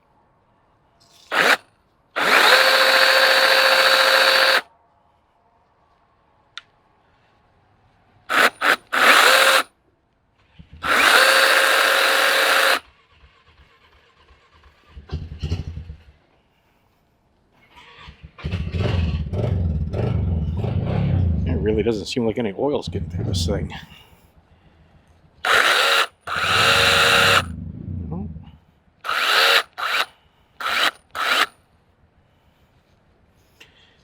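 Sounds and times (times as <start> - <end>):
electric chainsaw motor whine: 1.3 - 1.6, 2.2 - 4.6, 8.3 - 9.7, 10.8 - 12.8, 25.4 - 27.5, 29.1 - 31.5.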